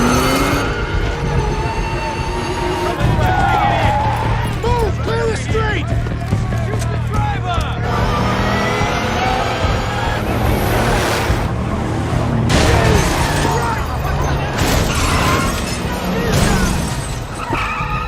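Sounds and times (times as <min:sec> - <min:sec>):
car engines: 0:00.0 - 0:18.0
film music: 0:00.0 - 0:18.0
car crashes: 0:12.4 - 0:18.0
glass breaking: 0:12.5 - 0:17.5.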